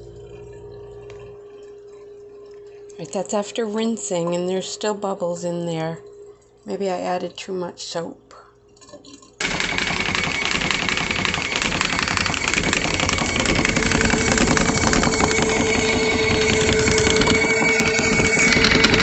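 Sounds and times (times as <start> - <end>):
washing machine motor running: 0.0 - 2.2, 9.4 - 19.0
steady hum: 0.0 - 19.0.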